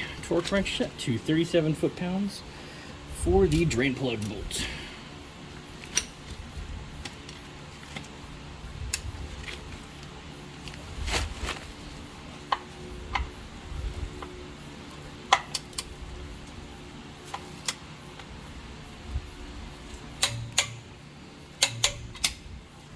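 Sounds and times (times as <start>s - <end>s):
steady low hum: 0.0s - 22.9s
torque wrench ratcheting clicks: 19.9s - 20.8s, 21.6s - 22.5s.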